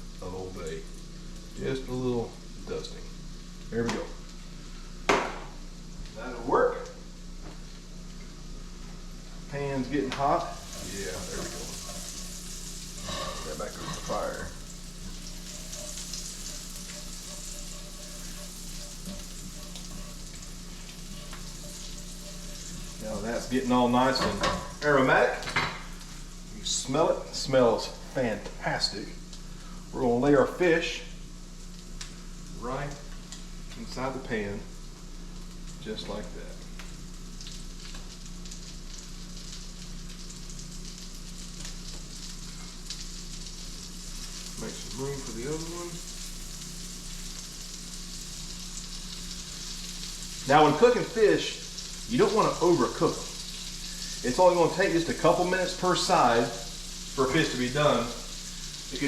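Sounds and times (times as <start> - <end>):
butter sizzling in a pan: 0.0 - 59.0
frying oil popping: 10.0 - 26.5, 34.7 - 59.0
small crackling pops: 31.7 - 32.2, 36.7 - 43.6.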